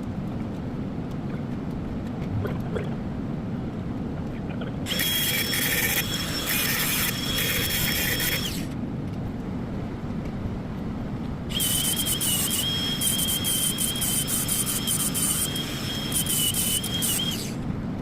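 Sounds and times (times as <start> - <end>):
grinder cutting metal: 4.9 - 8.7, 11.5 - 17.6.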